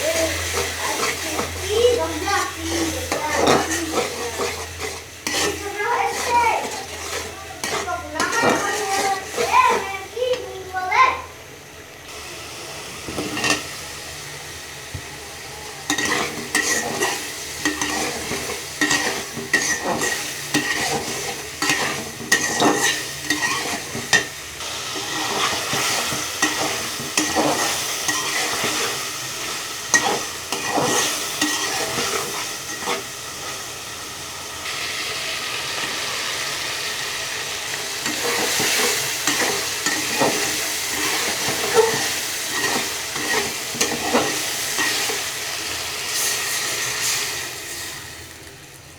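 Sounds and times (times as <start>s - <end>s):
spatula scraping a pan: 0.0s - 10.4s, 13.1s - 13.7s, 15.9s - 33.7s, 38.0s - 45.3s
food sizzling in a pan: 0.0s - 48.9s.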